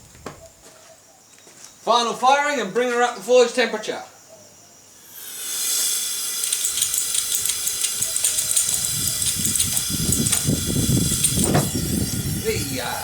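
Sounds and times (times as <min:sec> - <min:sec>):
gas burner hissing: 0:05.0 - 0:13.0.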